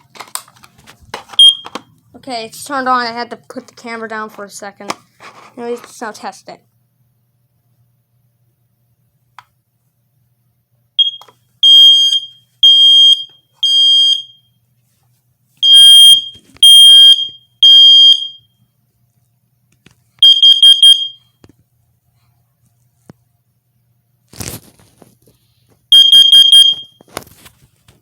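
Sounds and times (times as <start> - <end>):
smoke alarm chirp: 1.4 - 1.8, 11.0 - 14.6, 15.6 - 18.6, 20.2 - 21.3, 25.9 - 27.0
smoke alarm high-pitched beeps: 1.4 - 1.8, 11.0 - 14.6, 15.6 - 18.6, 20.2 - 21.3, 25.9 - 27.0.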